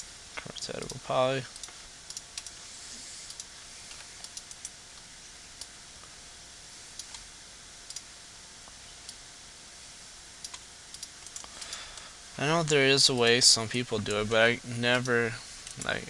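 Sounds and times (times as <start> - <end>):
faint steady hiss: 0.0 - 16.0
computer mouse clicks: 10.4 - 11.8.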